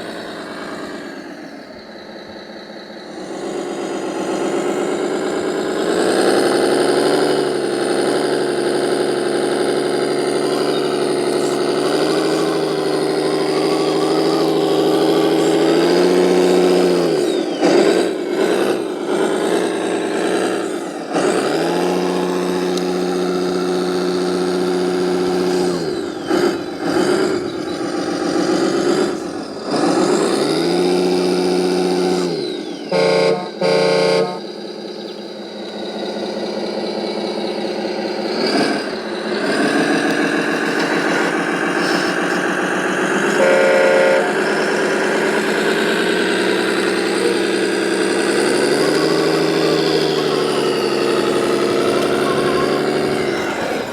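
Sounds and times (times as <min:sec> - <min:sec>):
heavy truck engine: 0:00.0 - 0:53.9
truck horn honking: 0:32.9 - 0:34.6, 0:43.3 - 0:45.5.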